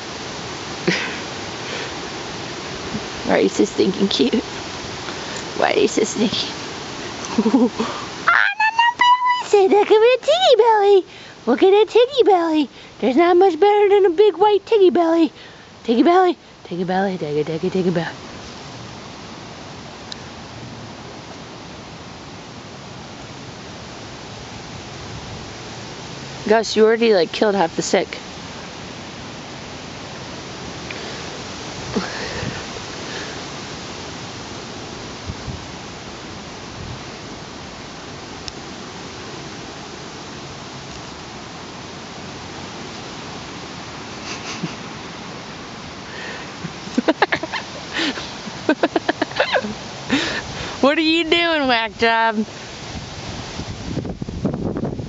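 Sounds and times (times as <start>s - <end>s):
wind blowing: 0.0s - 55.0s
wind rushing: 52.8s - 55.0s.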